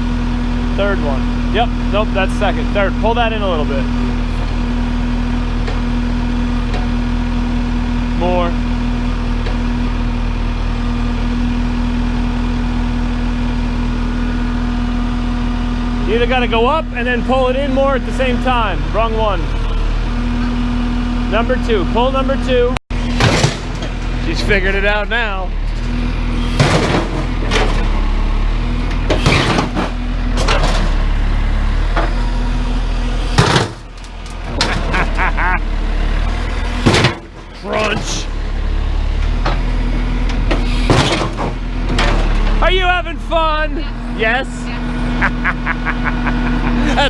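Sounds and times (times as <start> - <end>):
diesel engine running: 0.0 - 47.0
bucket clanking on scrap metal: 23.0 - 24.5, 25.7 - 28.0, 29.0 - 31.2, 33.3 - 35.5, 36.7 - 38.3, 40.4 - 42.6.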